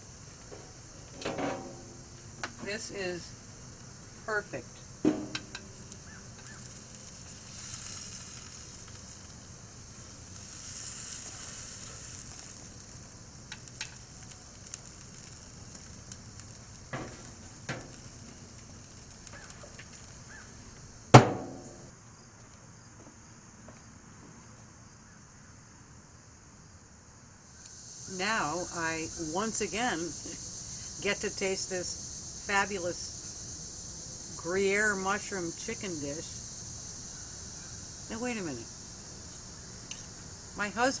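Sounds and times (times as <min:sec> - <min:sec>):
chicken sizzling on a grill: 0:00.0 - 0:21.9, 0:27.6 - 0:41.0
loud knock: 0:21.2 - 0:21.8.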